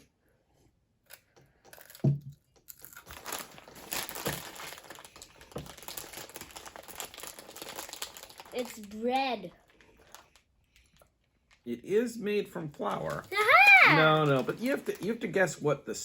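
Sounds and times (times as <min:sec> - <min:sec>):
plastic packaging crinkling: 0:02.8 - 0:11.7, 0:12.8 - 0:15.5.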